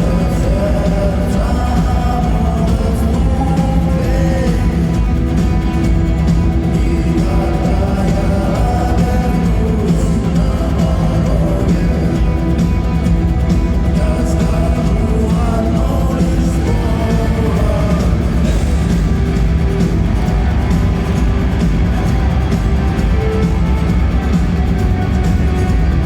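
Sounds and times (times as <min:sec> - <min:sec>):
live rock band music: 0:00.0 - 0:26.0
person singing: 0:00.0 - 0:26.0.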